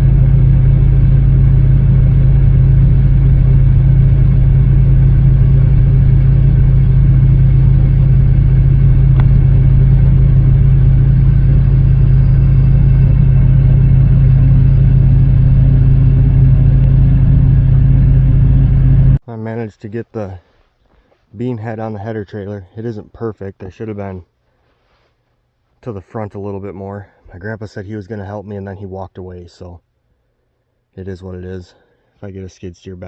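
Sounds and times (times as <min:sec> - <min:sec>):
diesel engine humming: 0:00.0 - 0:19.2.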